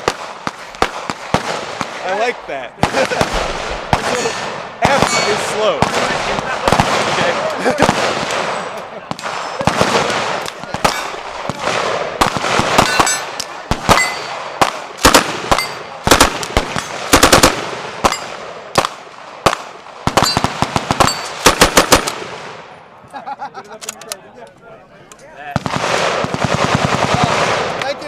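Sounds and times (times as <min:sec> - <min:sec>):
single gunshots: 0:00.0 - 0:22.5
background gunfire: 0:00.0 - 0:22.8, 0:25.6 - 0:28.0
automatic gunfire bursts: 0:02.8 - 0:22.5, 0:25.6 - 0:27.8.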